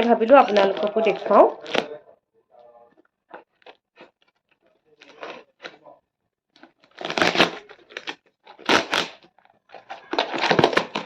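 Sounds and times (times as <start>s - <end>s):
packaging tearing and rustling: 6.6s - 11.0s.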